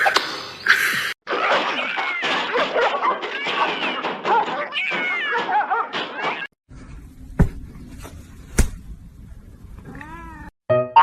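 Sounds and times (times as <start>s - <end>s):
loud thumps: 7.2s - 9.1s.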